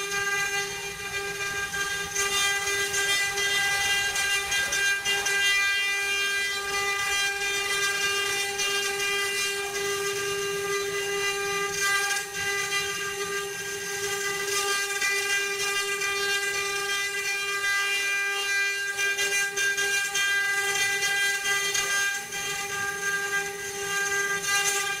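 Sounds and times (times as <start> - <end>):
cutter hissing on wood: 0.0 - 25.0
router spindle whining: 0.0 - 25.0.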